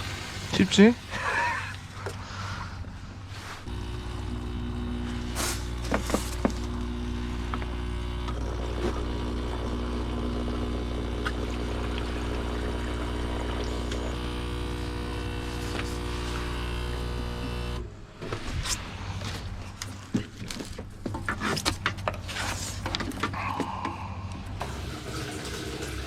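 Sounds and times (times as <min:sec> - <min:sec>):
machine electric hum: 0:03.1 - 0:18.8.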